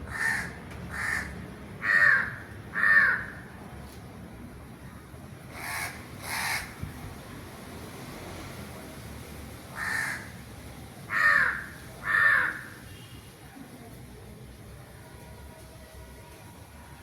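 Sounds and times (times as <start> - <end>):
crows cawing: 0.1 - 3.5, 5.6 - 6.8, 9.7 - 10.3, 11.1 - 12.8.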